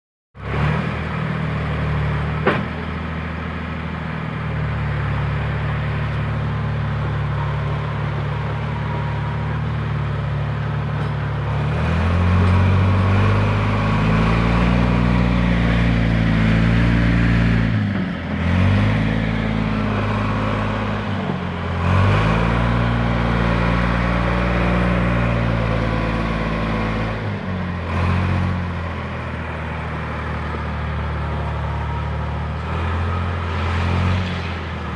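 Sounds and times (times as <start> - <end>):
backhoe engine revving: 4.6 - 34.9.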